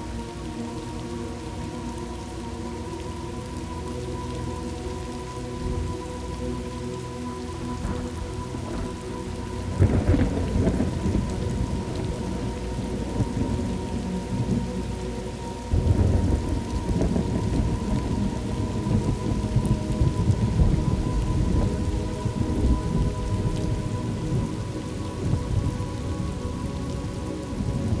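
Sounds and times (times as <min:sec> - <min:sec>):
steady rain: 0:00.0 - 0:28.0
heavy thunder rumbles: 0:07.8 - 0:14.6, 0:15.7 - 0:28.0
rolling thunder: 0:09.7 - 0:14.6, 0:15.7 - 0:26.9.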